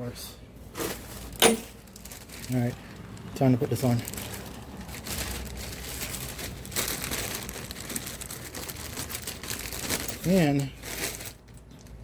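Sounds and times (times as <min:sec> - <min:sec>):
rustling and scraping handling noises: 0:00.6 - 0:12.0.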